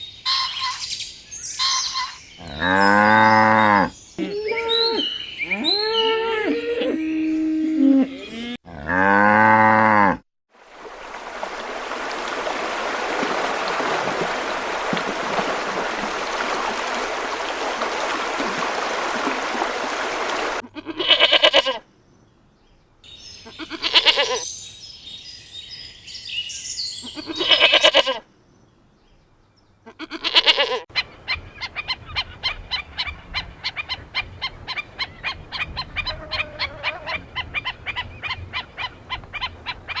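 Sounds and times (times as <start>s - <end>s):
animals bleating: 2.4s - 7.1s, 20.6s - 21.8s, 23.4s - 24.5s, 27.0s - 28.2s, 29.8s - 30.8s.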